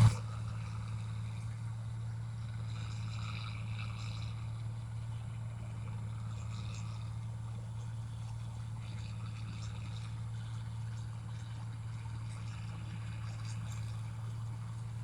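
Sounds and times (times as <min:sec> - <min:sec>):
machine engine humming: 0:00.0 - 0:00.2.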